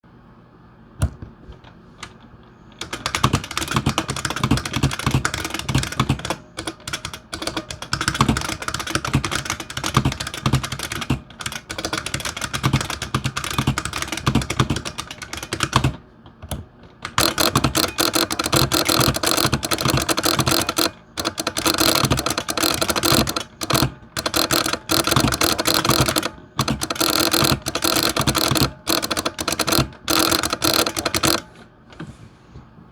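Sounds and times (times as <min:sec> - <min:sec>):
fast keyboard typing clicks: 0:02.8 - 0:31.7
keyboard solenoid clunk: 0:16.5 - 0:31.6.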